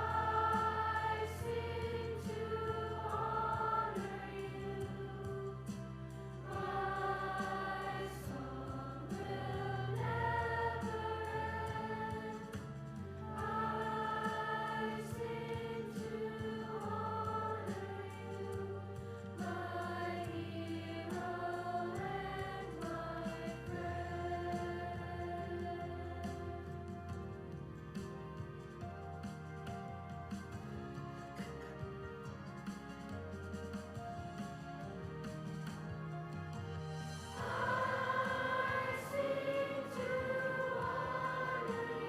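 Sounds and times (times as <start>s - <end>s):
choir singing slow song: 0.0s - 28.5s, 37.0s - 42.0s
low instrumental accompaniment: 0.0s - 42.0s.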